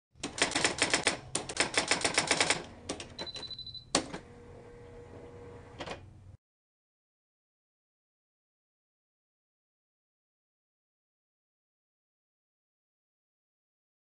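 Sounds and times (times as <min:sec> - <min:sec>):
typewriter keys clacking: 0:00.2 - 0:03.5.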